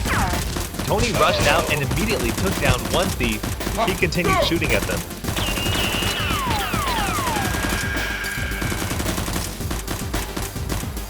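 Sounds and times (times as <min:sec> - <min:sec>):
background music: 0:00.0 - 0:11.0
rapid gunfire bursts: 0:00.0 - 0:11.0
falling whistling tones: 0:05.4 - 0:09.0.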